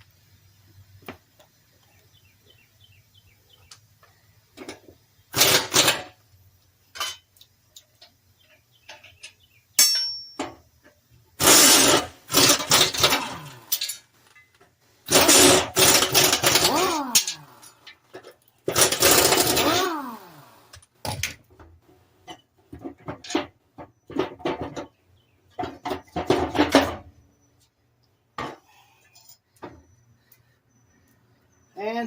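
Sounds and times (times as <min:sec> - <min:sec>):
metal parts and tools clinking: 0:04.6 - 0:06.2, 0:06.9 - 0:07.5, 0:08.1 - 0:20.4
pneumatic air ratchet bursts: 0:05.3 - 0:06.2, 0:11.4 - 0:14.0, 0:15.0 - 0:17.9, 0:18.7 - 0:20.7.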